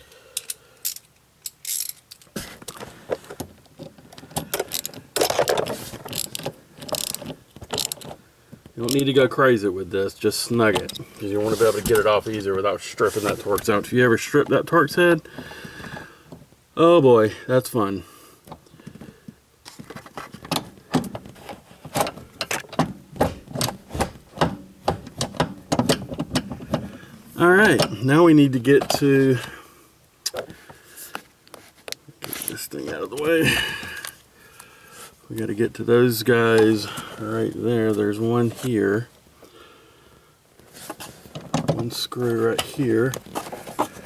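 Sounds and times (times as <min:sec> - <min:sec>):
hand tool clicking and scraping: 0:00.1 - 0:08.2.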